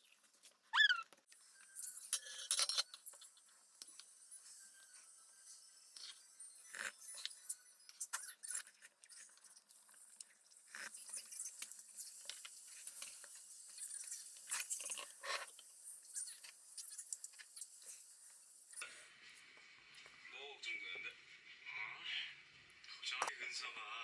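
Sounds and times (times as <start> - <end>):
tableware clinking: 1.6 - 4.6.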